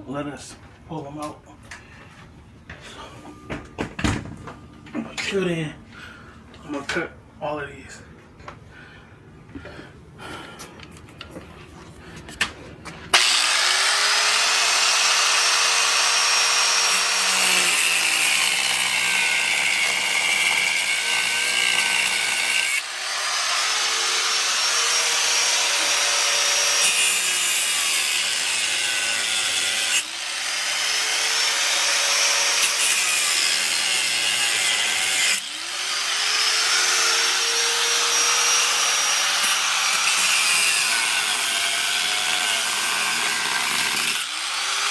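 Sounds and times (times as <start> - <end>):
angle grinder cutting screws: 13.1 - 44.9.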